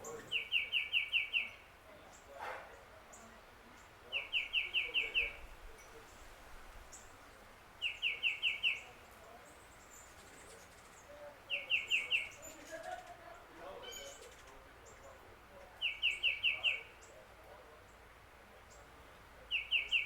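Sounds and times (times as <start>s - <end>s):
songbird singing repeated phrase: 0.0s - 2.3s, 3.1s - 6.1s, 7.8s - 12.7s, 13.8s - 15.2s, 15.8s - 17.2s, 18.6s - 20.0s.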